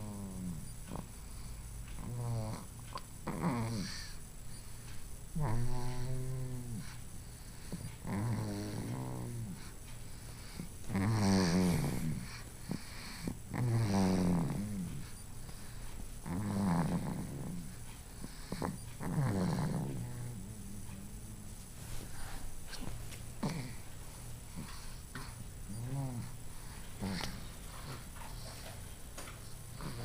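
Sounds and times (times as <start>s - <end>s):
person snoring: 3.3s - 4.2s, 5.4s - 7.0s, 7.7s - 9.7s, 10.5s - 15.1s, 16.2s - 21.5s, 23.4s - 23.8s, 24.6s - 26.4s, 27.0s - 27.4s.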